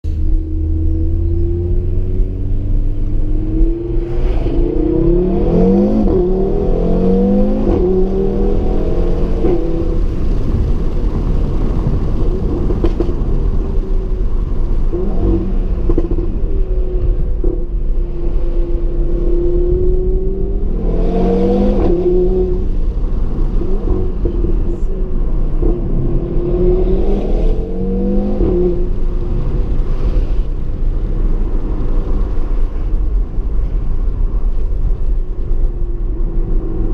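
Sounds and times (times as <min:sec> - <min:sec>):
low road rumble: 0:00.0 - 0:36.9
car engine revving: 0:00.1 - 0:35.3.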